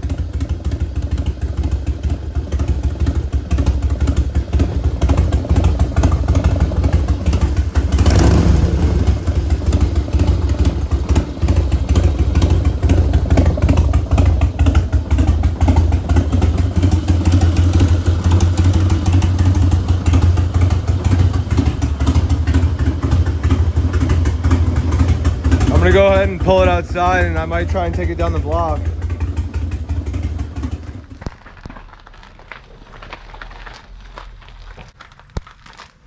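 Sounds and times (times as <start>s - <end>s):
motorcycle engine idling: 0.0s - 31.5s.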